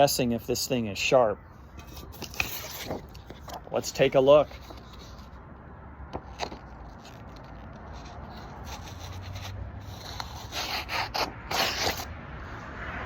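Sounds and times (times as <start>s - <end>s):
knife slicing through paper: 6.9s - 12.1s.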